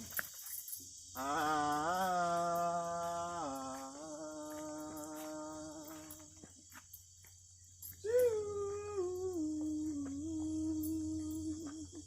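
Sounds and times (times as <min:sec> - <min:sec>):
crickets chirping: 0:00.0 - 0:12.0
person singing long notes: 0:01.2 - 0:06.5, 0:08.0 - 0:12.0.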